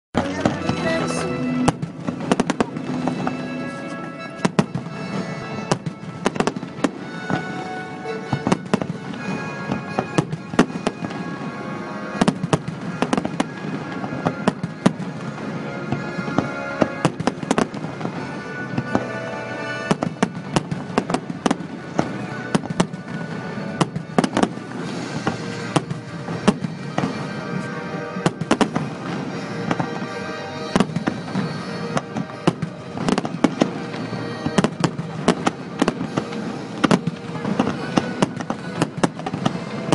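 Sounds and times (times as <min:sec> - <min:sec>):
fireworks bangs: 0:00.2 - 0:39.9
music playing: 0:00.2 - 0:39.9.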